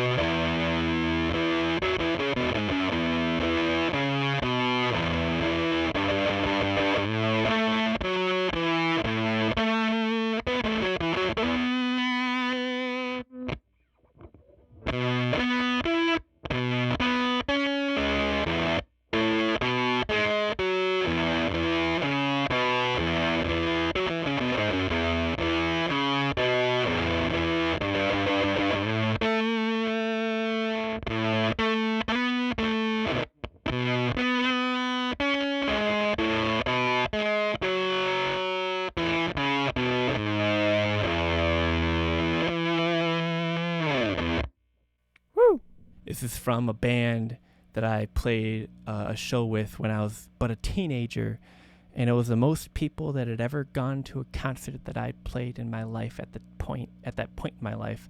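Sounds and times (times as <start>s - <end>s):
fuzzed electric guitar notes: 0.0s - 13.6s, 14.4s - 44.5s.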